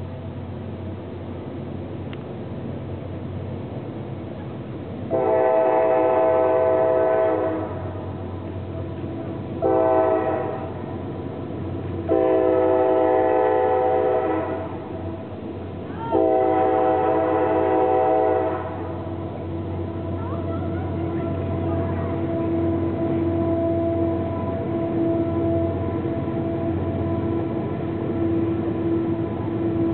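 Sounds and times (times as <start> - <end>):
train rumbling: 0.0 - 29.9
locomotive air horn blasts: 5.1 - 8.2, 9.6 - 11.0, 12.0 - 15.0, 16.1 - 29.9.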